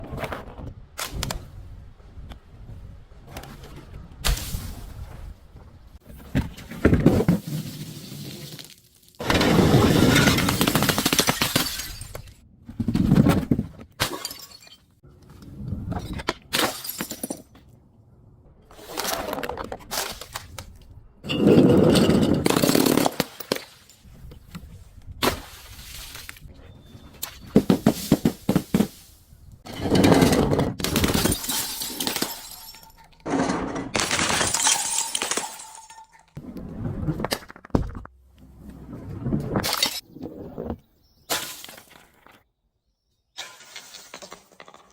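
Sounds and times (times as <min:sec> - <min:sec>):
glass bottles shattering: 0:09.7 - 0:12.4, 0:14.0 - 0:14.9, 0:16.6 - 0:17.5, 0:30.8 - 0:36.4.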